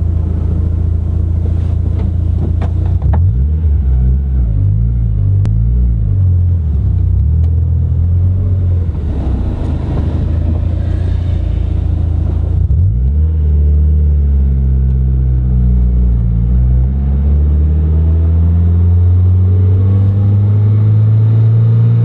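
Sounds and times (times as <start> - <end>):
car engine idling: 0.0 - 3.1, 3.9 - 13.5
engine throttle blips: 6.5 - 13.5.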